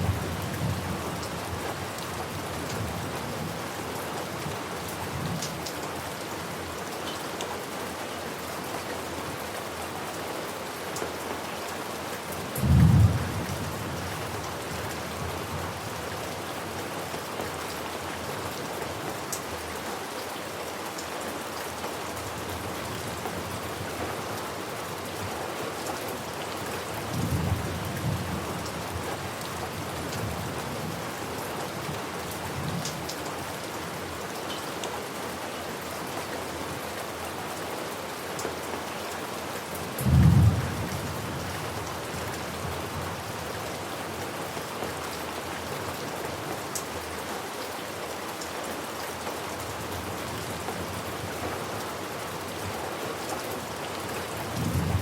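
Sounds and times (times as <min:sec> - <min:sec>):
heavy rain: 0:00.0 - 0:55.0
rumble of thunder: 0:12.6 - 0:13.7, 0:40.0 - 0:41.5.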